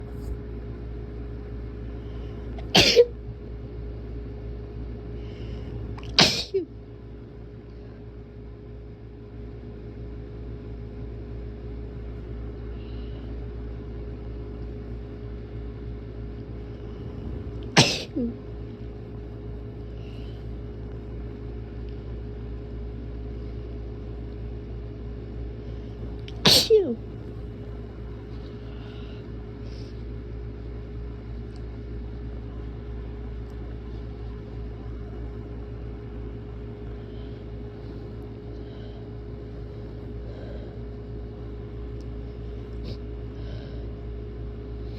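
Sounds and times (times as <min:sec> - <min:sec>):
faint constant hum: 0:00.0 - 0:44.9
low background rumble: 0:00.0 - 0:44.9.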